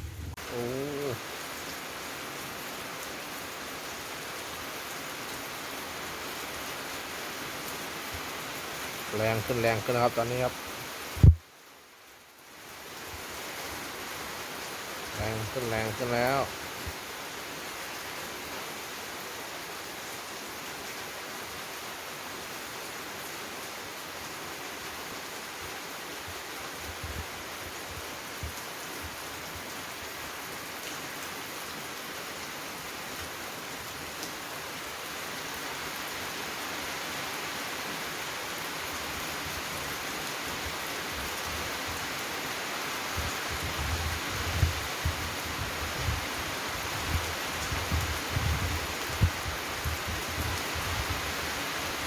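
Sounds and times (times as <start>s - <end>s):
heavy rain pouring: 0.0s - 52.0s
wind buffeting microphone: 43.1s - 51.3s.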